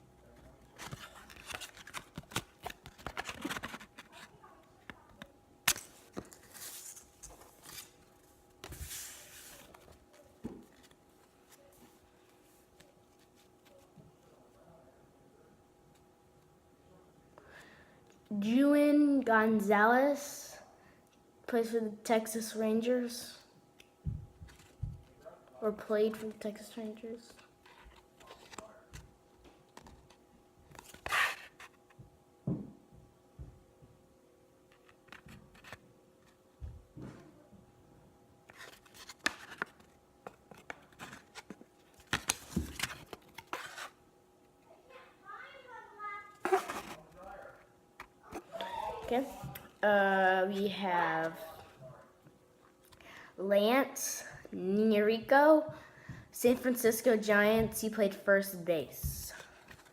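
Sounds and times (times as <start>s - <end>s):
trading cards rustling: 0.6s - 10.0s, 26.0s - 29.1s, 38.5s - 44.0s, 46.4s - 47.2s, 59.4s - 59.9s.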